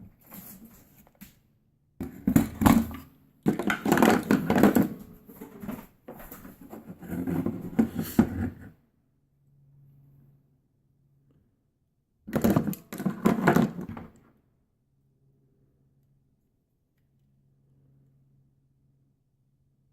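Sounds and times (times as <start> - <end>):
faint low hum: 4.3 - 12.2, 13.9 - 19.9.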